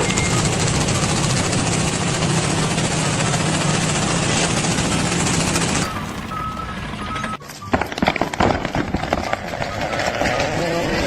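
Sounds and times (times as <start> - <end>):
heavy machinery rattling: 0.0 - 10.2
thin high tone: 5.8 - 7.7.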